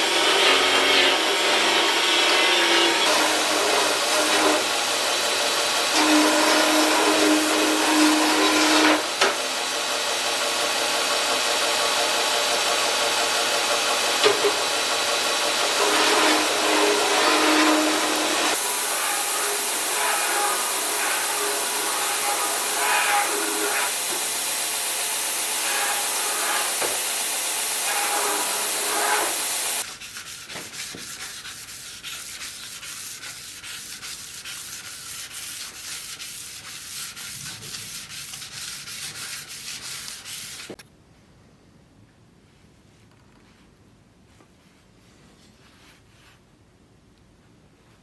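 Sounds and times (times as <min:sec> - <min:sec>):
hand sanding strokes on metal: 0:25.6 - 0:40.8.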